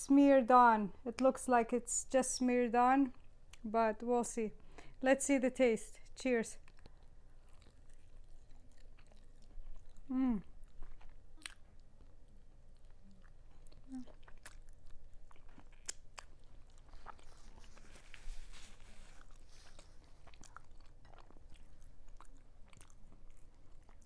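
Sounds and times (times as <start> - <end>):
chewing chicken: 6.6 - 24.0.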